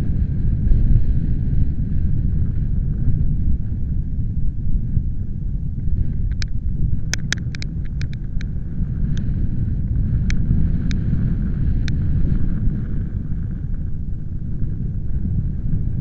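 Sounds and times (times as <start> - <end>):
wind gusting over microphone: 0.0 - 16.0
sharp high ticks: 6.3 - 8.5.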